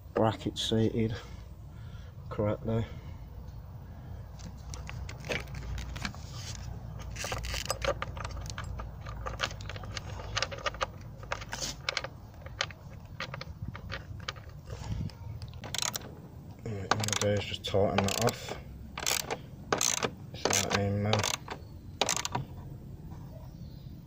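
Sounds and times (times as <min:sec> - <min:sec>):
metallic clinks and rattles of tools: 0:07.0 - 0:14.8, 0:15.5 - 0:16.1, 0:16.8 - 0:22.5.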